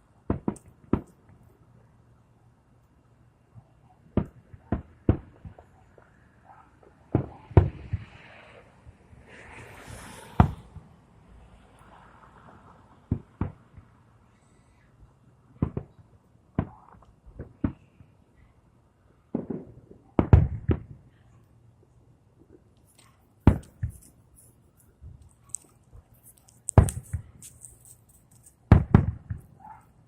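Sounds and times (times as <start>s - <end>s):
crackling hiss: 22.7s - 28.7s
firework shells bursting: 23.0s - 24.6s, 25.2s - 29.5s.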